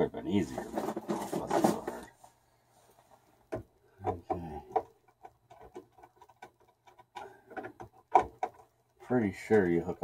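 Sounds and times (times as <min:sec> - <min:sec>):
tools rattling and ticking: 0:04.7 - 0:08.9.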